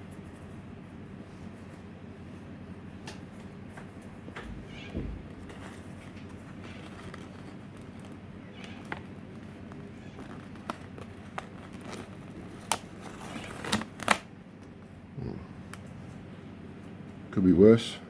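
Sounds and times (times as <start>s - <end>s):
steady low hum: 0.0s - 18.0s
plastic shell clicking and crackling: 6.5s - 14.7s.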